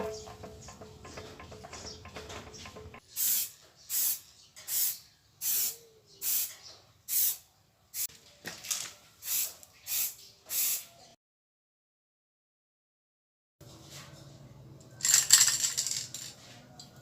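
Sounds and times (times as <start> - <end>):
spray paint hissing: 3.1 - 7.4, 9.2 - 11.0.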